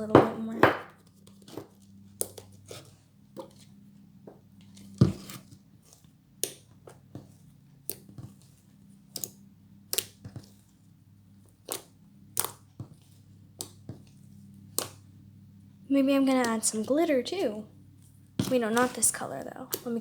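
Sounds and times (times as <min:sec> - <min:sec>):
slime snapping and popping: 0:11.7 - 0:12.6.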